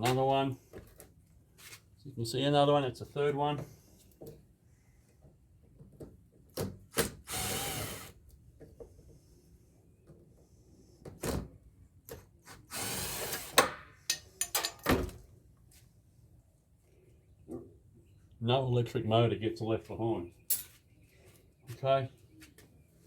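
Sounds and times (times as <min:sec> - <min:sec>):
power drill backing out screws: 0:07.0 - 0:08.2, 0:12.7 - 0:13.8
parts clicking and knocking: 0:13.5 - 0:15.0.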